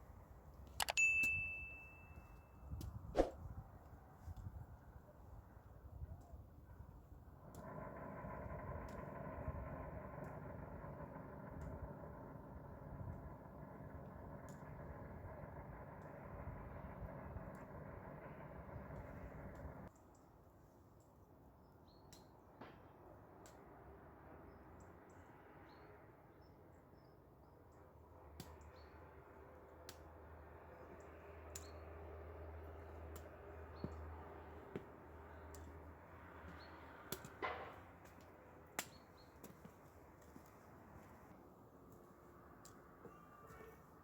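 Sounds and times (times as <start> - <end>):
sharp clicks: 0.6 - 1.4
low hum: 6.6 - 20.0.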